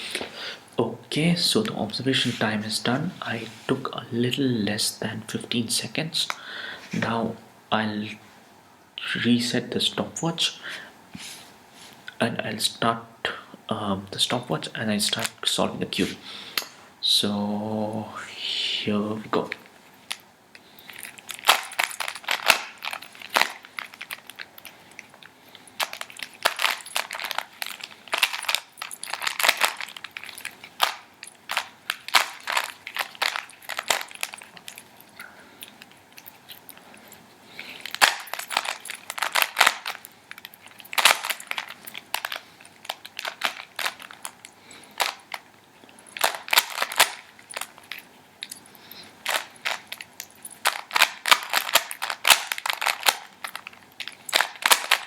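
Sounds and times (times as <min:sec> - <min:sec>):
puzzle cube clicking: 0:54.3 - 0:55.0.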